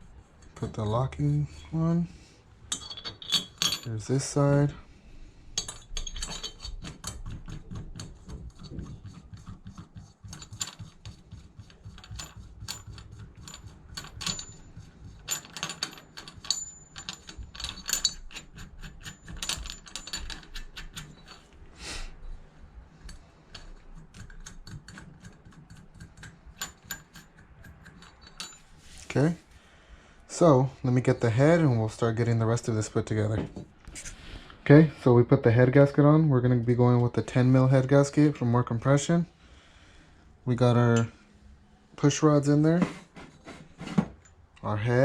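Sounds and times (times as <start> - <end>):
metal parts clicking and clinking: 2.7 - 4.6, 5.6 - 8.8, 10.2 - 21.6, 23.0 - 29.2.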